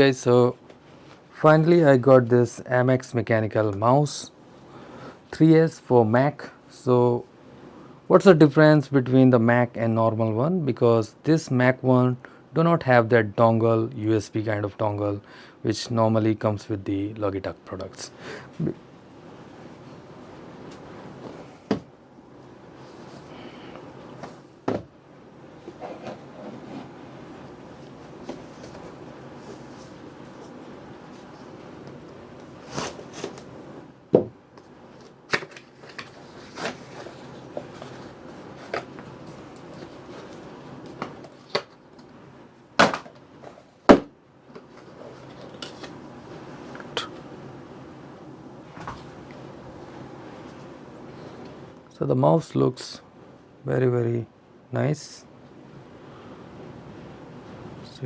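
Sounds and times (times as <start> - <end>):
cardboard packaging rustling: 34.9 - 41.8
sharp knocks on box: 42.8 - 43.1, 43.9 - 44.1.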